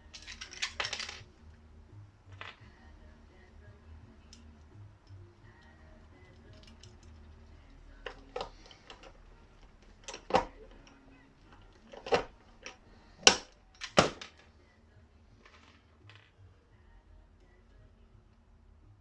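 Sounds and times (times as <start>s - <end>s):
hard parts knocking: 8.0s - 14.4s.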